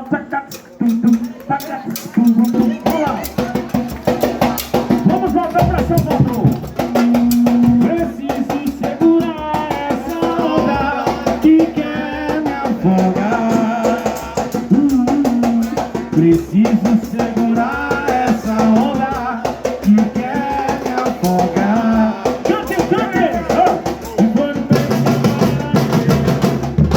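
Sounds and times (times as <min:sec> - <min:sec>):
drums and rattles playing fast rhythm: 0:00.0 - 0:26.9
person singing: 0:07.0 - 0:26.4.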